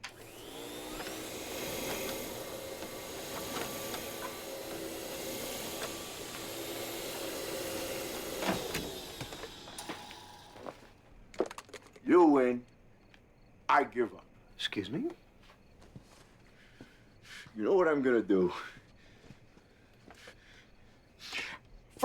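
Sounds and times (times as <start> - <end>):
vacuum cleaner motor whining: 0.0 - 11.0.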